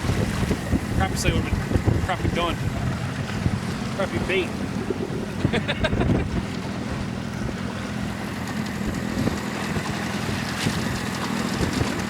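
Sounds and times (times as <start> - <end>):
boat motor running: 0.0 - 12.0
wind noise: 0.0 - 12.0.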